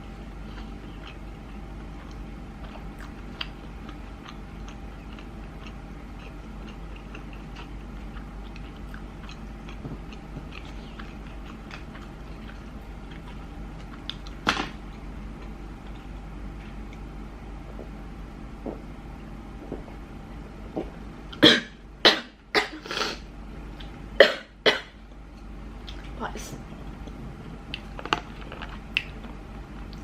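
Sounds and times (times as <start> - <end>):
low hum: 0.0 - 30.0
wet mouth chewing sounds: 0.4 - 18.0, 25.8 - 30.0.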